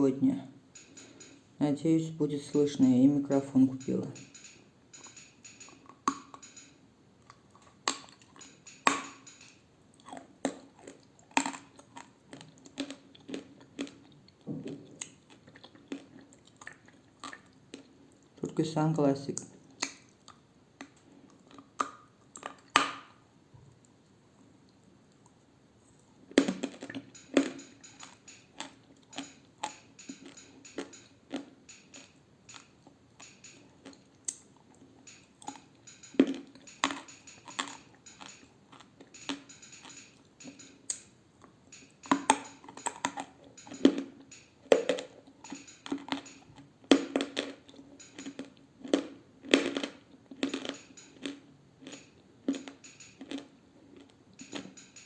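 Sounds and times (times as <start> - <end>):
crunching of clay being chewed: 10.0 - 18.2, 47.0 - 54.2.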